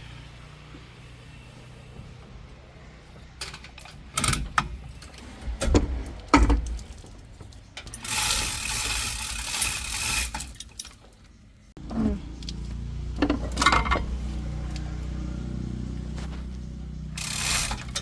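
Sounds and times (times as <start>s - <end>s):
rushing mechanical noise: 0.0s - 10.8s, 13.2s - 18.0s
metal tools clanking: 3.4s - 11.5s, 13.2s - 14.2s, 17.2s - 18.0s.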